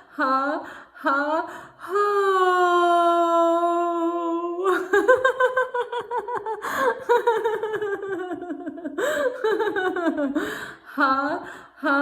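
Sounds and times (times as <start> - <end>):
woman laughing: 4.6 - 10.6.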